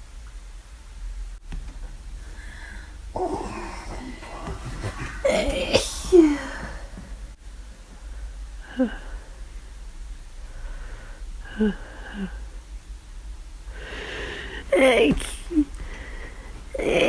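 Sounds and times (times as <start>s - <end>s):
falling vocal sounds: 2.4s - 7.0s
person sneezing: 3.2s - 7.0s.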